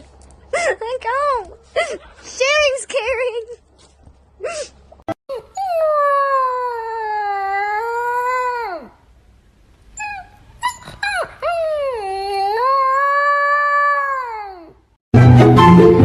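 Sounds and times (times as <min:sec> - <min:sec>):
dog yipping and whimpering: 0:10.0 - 0:13.0
music: 0:15.1 - 0:16.0.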